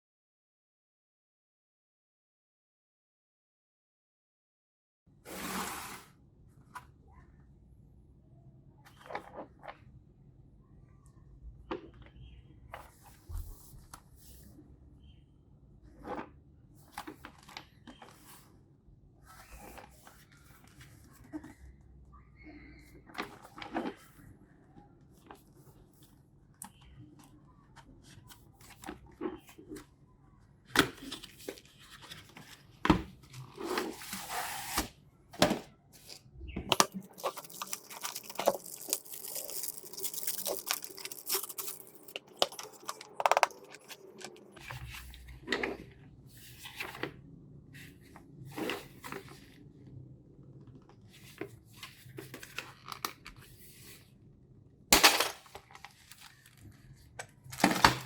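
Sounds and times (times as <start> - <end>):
packaging torn and crinkled: 36.7 - 44.6
sharp clicks and rustles: 36.7 - 44.8.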